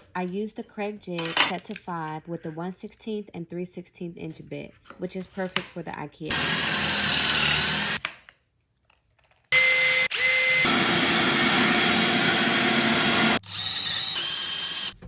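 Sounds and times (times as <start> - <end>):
power drill boring into wood: 6.3 - 8.0, 9.6 - 15.0.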